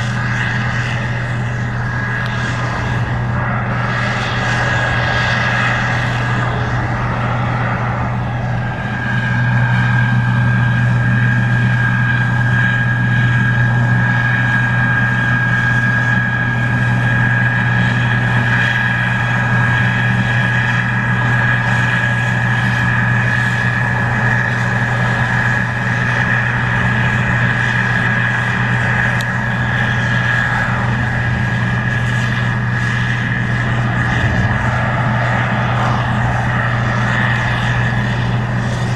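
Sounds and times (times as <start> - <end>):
high-pitched machine whine: 0.0 - 38.9.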